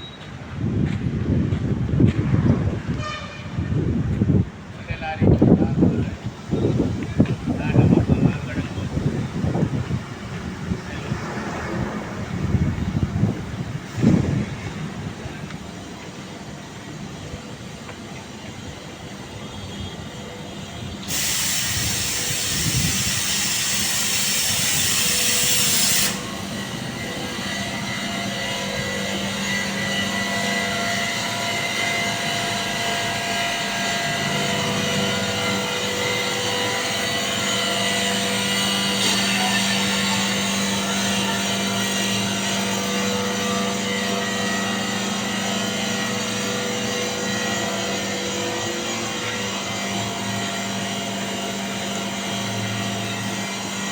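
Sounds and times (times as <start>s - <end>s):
air compressor humming: 5.6s - 53.9s
loud air hiss: 18.6s - 53.8s.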